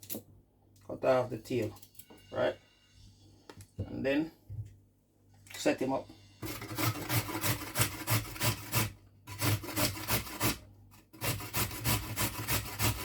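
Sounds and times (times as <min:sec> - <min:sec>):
carrot grated on grater: 0:06.4 - 0:13.0.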